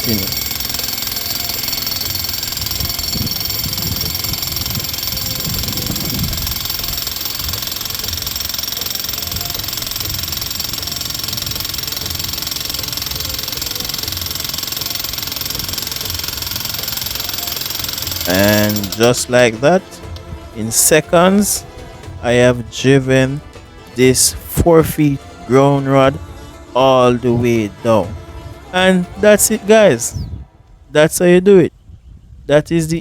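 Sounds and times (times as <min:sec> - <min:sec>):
electric jackhammer hammering: 0:00.0 - 0:30.0.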